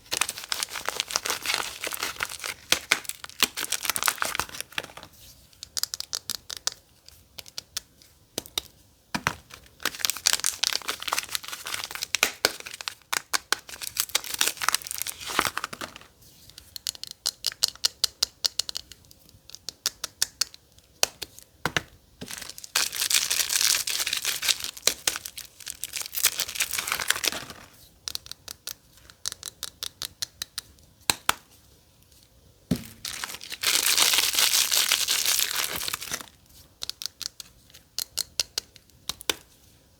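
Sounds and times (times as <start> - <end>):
wrappers crinkling and tearing: 0.0 - 5.1, 9.5 - 16.1, 22.2 - 27.8, 32.8 - 36.4.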